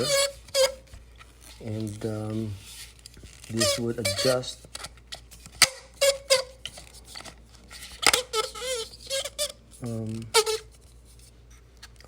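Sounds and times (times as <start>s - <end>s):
short plastic squeaks: 0.0s - 0.9s, 3.3s - 4.9s, 5.6s - 6.9s, 7.8s - 9.6s, 10.4s - 10.8s.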